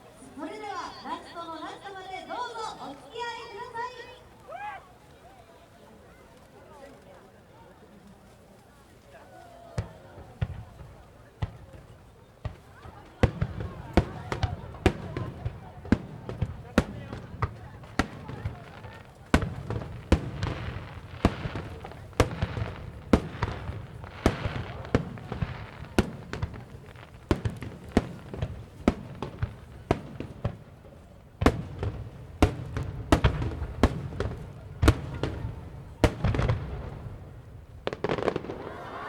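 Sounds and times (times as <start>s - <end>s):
fireworks bursting with sharp bangs: 9.6s - 39.0s.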